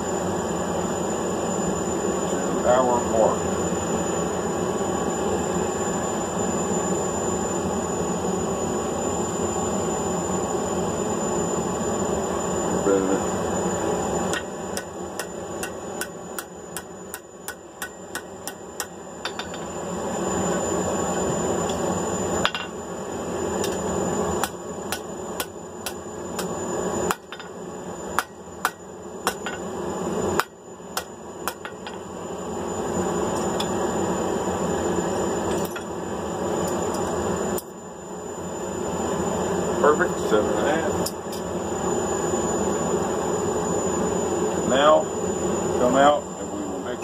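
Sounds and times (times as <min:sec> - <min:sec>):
steady background roar: 0:00.0 - 0:47.0
hammer striking steel on anvil: 0:14.3 - 0:19.7, 0:22.4 - 0:22.8, 0:24.4 - 0:26.5, 0:27.1 - 0:27.6, 0:28.2 - 0:29.6, 0:30.4 - 0:32.0.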